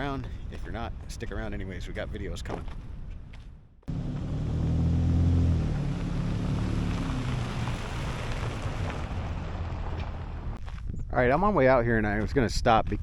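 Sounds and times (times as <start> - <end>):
tyre and road noise: 2.5 - 10.8
pickup engine hum: 3.9 - 10.6.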